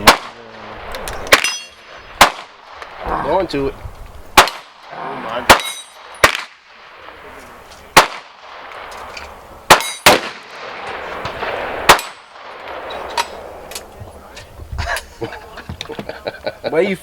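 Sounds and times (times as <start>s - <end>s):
gunshots with echo: 0.0s - 3.4s, 4.4s - 7.2s, 7.9s - 8.8s.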